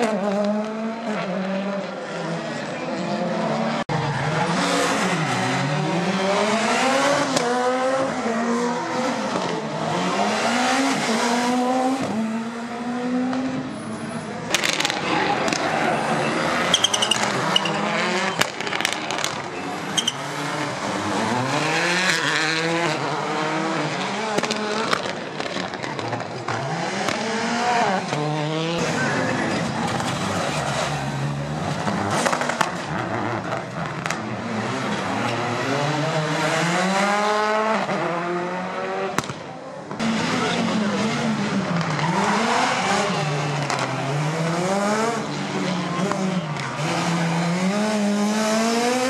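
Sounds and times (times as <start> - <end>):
rally car engines revving: 0.0 - 49.0
tyre squeal: 15.9 - 18.4, 19.6 - 20.4.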